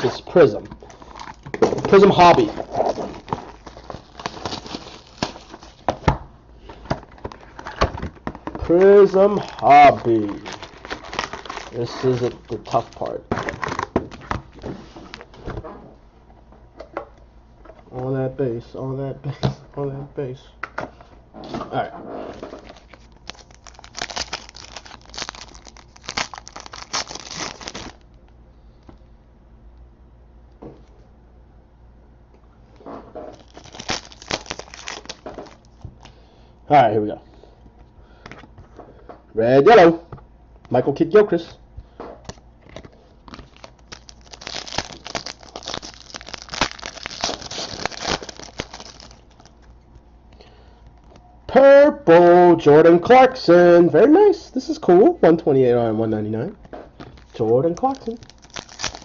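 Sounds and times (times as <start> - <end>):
foil wrapper tearing and crinkling: 0.9 - 5.9, 9.0 - 14.6, 22.5 - 28.0, 33.3 - 35.8, 42.3 - 49.6, 57.0 - 59.0.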